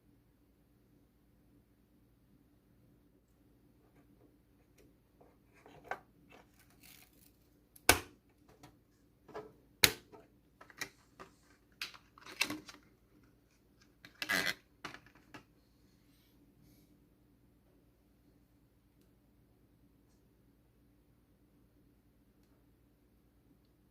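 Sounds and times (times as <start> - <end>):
hands handling computer hardware: 4.0 - 15.5.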